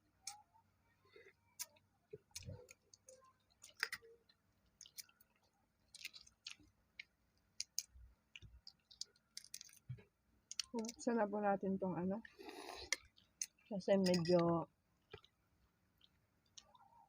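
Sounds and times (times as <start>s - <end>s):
chewing with wet mouth smacks: 1.6s - 9.9s, 10.5s - 11.0s, 15.0s - 15.4s.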